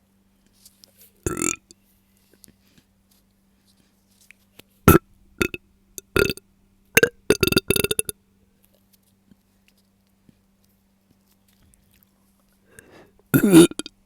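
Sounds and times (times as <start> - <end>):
woman burping: 1.3 - 1.7, 4.9 - 6.4, 13.4 - 13.9.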